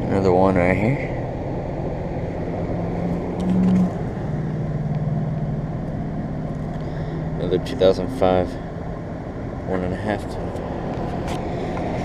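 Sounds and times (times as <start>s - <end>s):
low machine hum: 0.0s - 12.0s
outdoor rumble: 0.0s - 12.0s
short low tone: 3.4s - 4.0s.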